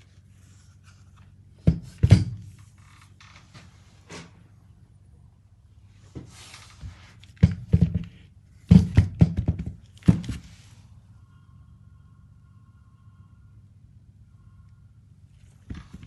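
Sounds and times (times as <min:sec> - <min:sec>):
short rustle: 0:06.0 - 0:07.2.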